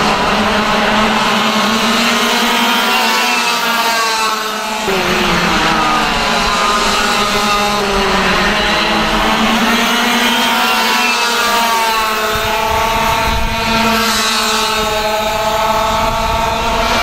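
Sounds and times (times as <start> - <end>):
kart engine at high revs: 0.0 - 17.0.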